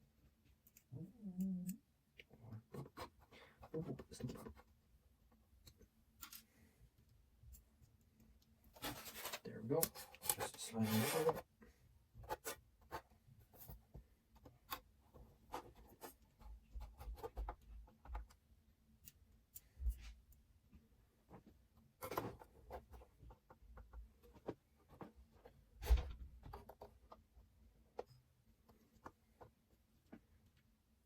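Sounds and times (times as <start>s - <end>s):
hands handling computer parts: 5.4s - 11.6s, 21.3s - 30.7s.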